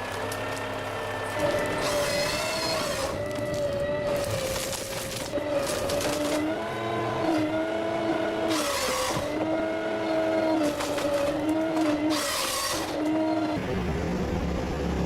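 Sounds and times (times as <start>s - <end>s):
heavy machine drive whining: 1.1s - 15.0s.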